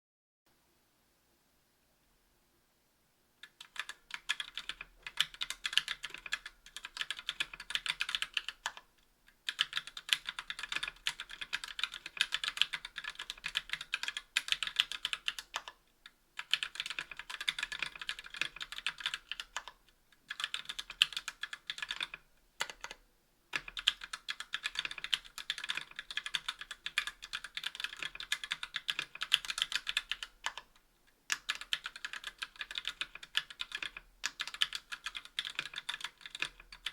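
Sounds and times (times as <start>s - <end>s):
mechanical keyboard typing: 3.4s - 15.8s, 16.4s - 23.0s, 23.6s - 36.9s.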